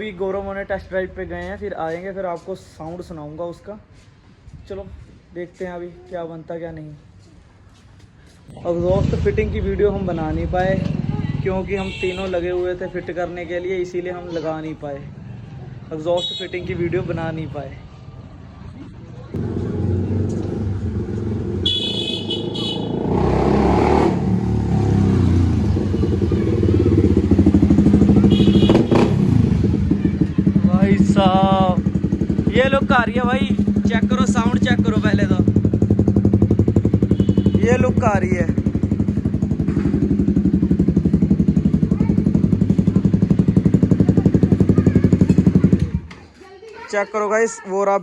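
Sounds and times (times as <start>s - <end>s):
loud motorcycle engine: 8.5s - 13.0s, 19.4s - 46.1s.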